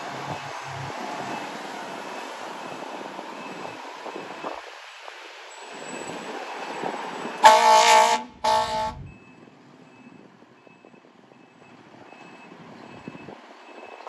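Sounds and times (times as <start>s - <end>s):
fire alarm horn blasts: 7.4s - 9.2s.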